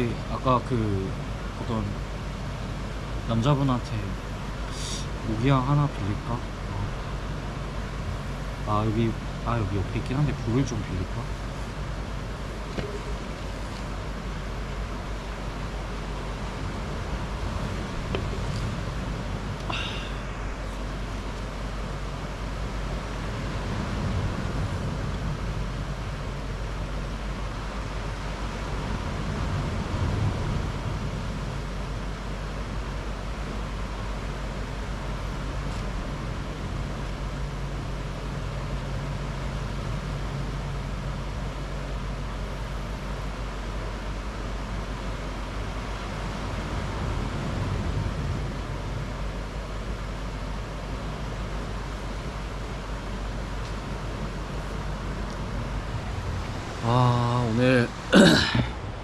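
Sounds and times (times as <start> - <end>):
faint low hum: 0.0 - 59.0
surf on a pebble beach: 14.8 - 21.1.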